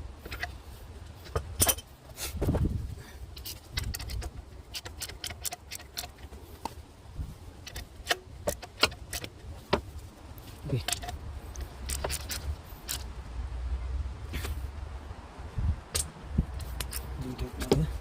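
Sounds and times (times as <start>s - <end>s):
hand tools clinking: 0.2s - 2.1s, 3.3s - 6.8s, 10.4s - 13.1s.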